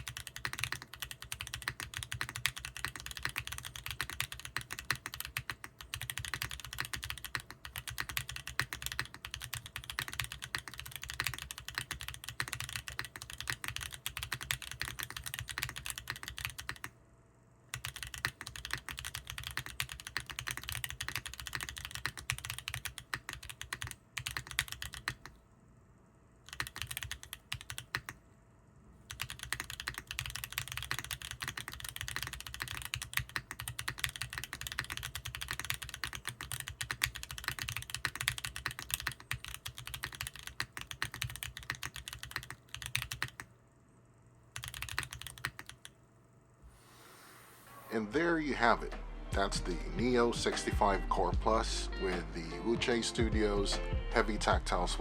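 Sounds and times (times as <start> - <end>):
fast typing on mechanical keyboard: 0.0 - 16.9, 17.7 - 25.4, 26.5 - 28.2, 29.1 - 43.5, 44.6 - 46.0.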